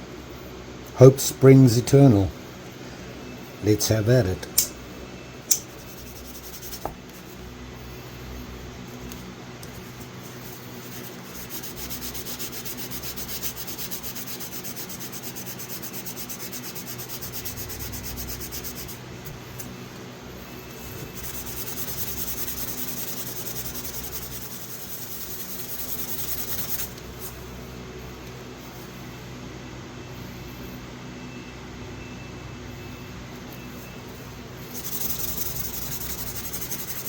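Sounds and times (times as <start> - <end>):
sandpaper rubbing on metal: 5.8 - 7.4, 10.2 - 19.0, 21.1 - 27.0, 34.7 - 37.0.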